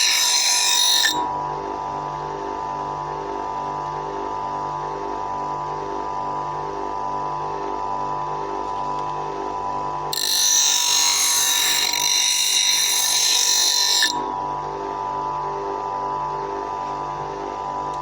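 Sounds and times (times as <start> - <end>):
blade grinding on wheel: 0.0 - 1.2, 10.2 - 14.2
bench grinder motor humming: 0.0 - 1.7, 10.0 - 15.0.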